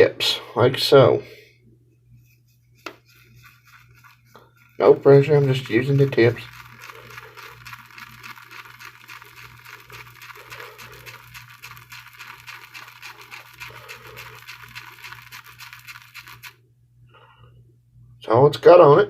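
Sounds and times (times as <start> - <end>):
shaving brush scratching on soap: 2.2 - 16.6.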